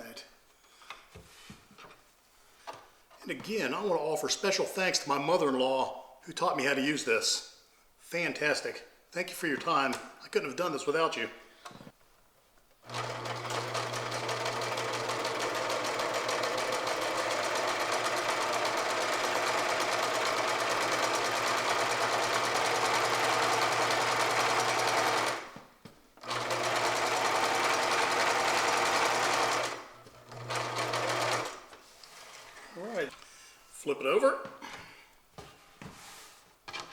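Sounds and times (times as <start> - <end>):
sewing machine stitching: 12.8 - 25.6, 26.2 - 31.7.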